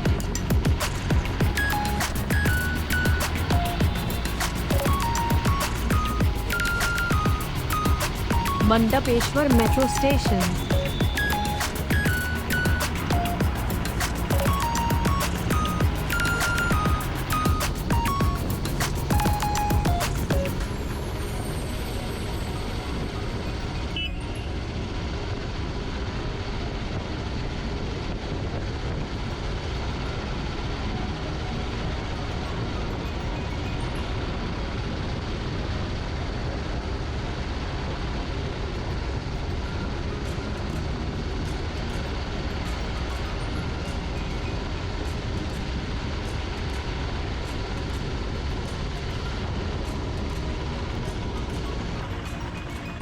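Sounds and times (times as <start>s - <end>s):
faint steady tones: 0.0s - 25.5s
train running rumble: 0.0s - 53.0s.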